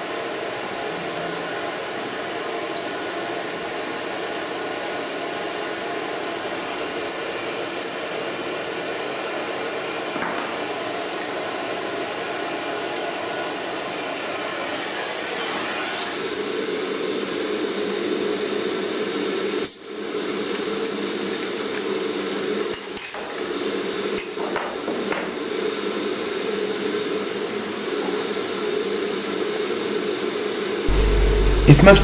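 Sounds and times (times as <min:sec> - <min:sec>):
cnc router humming: 0:30.9 - 0:32.0.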